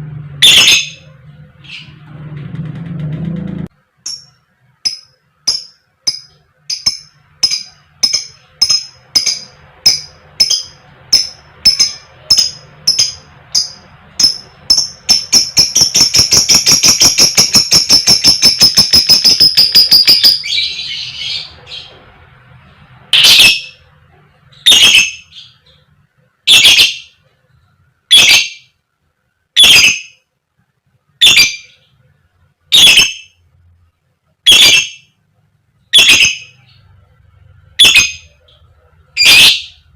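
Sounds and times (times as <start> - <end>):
lovebird chirps: 4.0 - 22.0, 24.5 - 25.8, 26.5 - 27.2, 28.1 - 28.8, 29.6 - 30.2, 31.2 - 32.0, 32.7 - 33.4, 34.4 - 35.2, 35.9 - 36.9, 37.8 - 39.9
lovebird rattling chatter: 4.1 - 20.5
lovebird koek calls: 4.9 - 21.9, 35.9 - 36.8.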